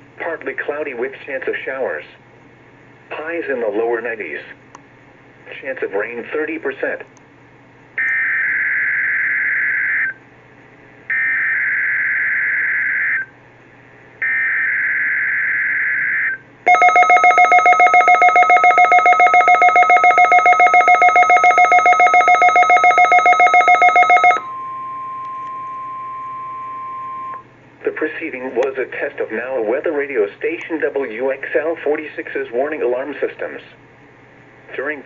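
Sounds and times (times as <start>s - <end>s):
steady warning alarm tone: 8.0s - 10.2s, 11.1s - 13.3s, 14.2s - 27.4s
rapidly pulsing electronic alert tone: 16.7s - 24.5s.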